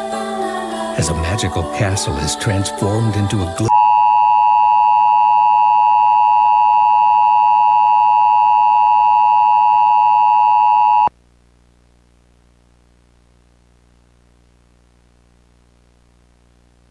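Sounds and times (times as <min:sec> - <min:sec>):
faint hum: 0:00.0 - 0:16.9
two-tone alert signal blare: 0:03.7 - 0:11.1.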